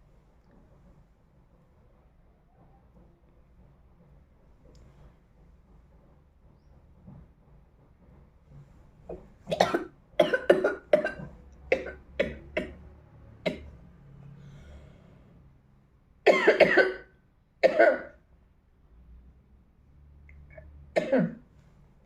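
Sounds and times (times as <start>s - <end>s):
woman coughing: 9.5s - 12.8s, 16.3s - 18.2s.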